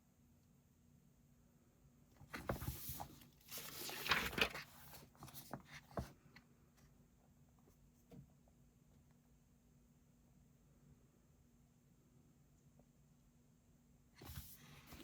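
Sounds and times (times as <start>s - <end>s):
book page turning: 2.2s - 6.2s, 14.2s - 15.0s.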